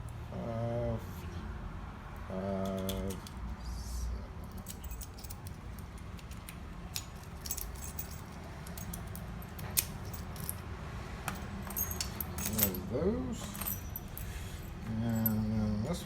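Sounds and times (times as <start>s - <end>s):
small metallic clicks of lock parts: 2.6s - 3.4s, 4.4s - 10.6s, 11.3s - 14.2s.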